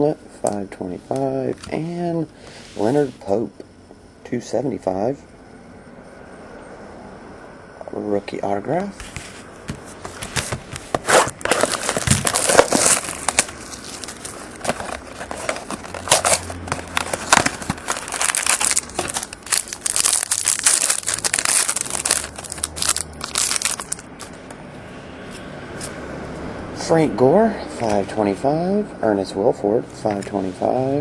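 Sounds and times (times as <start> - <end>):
wrapper tearing and crinkling: 11.0 - 24.4.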